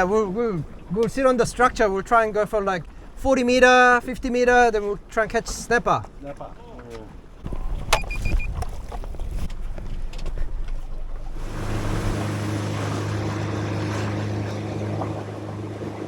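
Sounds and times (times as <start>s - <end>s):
boat motor running: 7.4s - 16.0s
water rushing: 11.0s - 16.0s.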